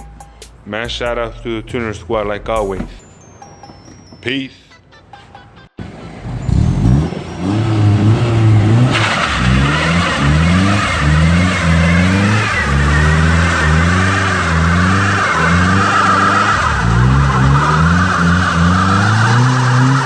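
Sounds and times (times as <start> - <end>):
tyres squealing and skidding: 3.4 - 5.1, 5.8 - 8.1, 8.7 - 20.0
car engine revving: 5.8 - 20.0.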